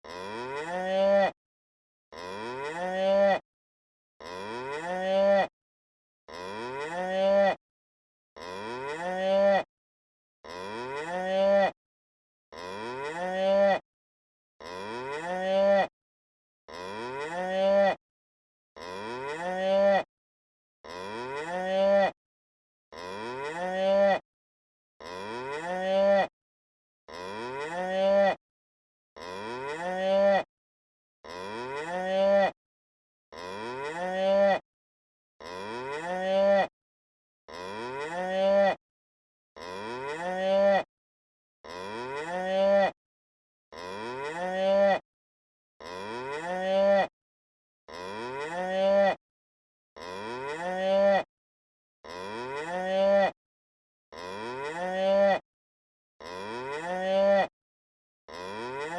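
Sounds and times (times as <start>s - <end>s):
cow mooing: 0.1s - 1.3s, 2.2s - 3.4s, 4.2s - 5.5s, 6.3s - 7.5s, 8.4s - 9.6s, 10.5s - 11.7s, 12.6s - 13.8s, 14.6s - 15.8s, 16.7s - 18.0s, 18.8s - 20.0s, 20.9s - 22.1s, 23.0s - 24.2s, 25.0s - 26.2s, 27.1s - 28.3s, 29.2s - 30.4s, 31.3s - 32.5s, 33.4s - 34.6s, 35.4s - 36.6s, 37.5s - 38.7s, 39.6s - 40.8s, 41.7s - 42.9s, 43.8s - 45.0s, 45.8s - 47.0s, 48.0s - 49.1s, 50.0s - 51.2s, 52.1s - 53.3s, 54.2s - 55.4s, 56.3s - 57.4s, 58.4s - 58.6s.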